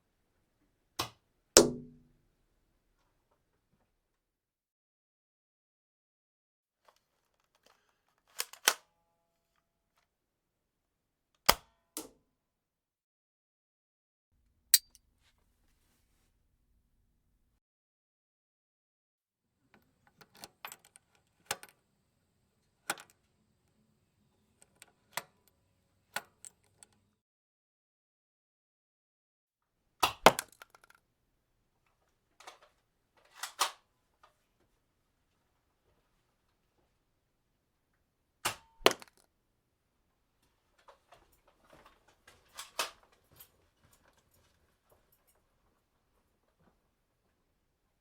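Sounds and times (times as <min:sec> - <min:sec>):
gun being handled clicking: 0:14.8 - 0:15.0.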